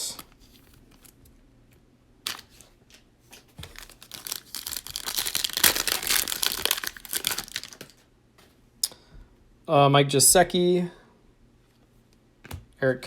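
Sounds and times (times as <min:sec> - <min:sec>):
plastic wrapper crinkling: 0:02.3 - 0:08.1.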